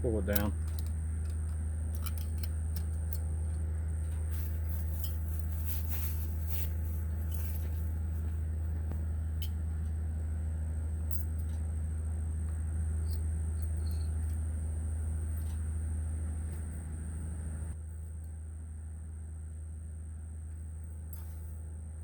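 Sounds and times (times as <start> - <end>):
low engine hum: 0.0 - 22.0.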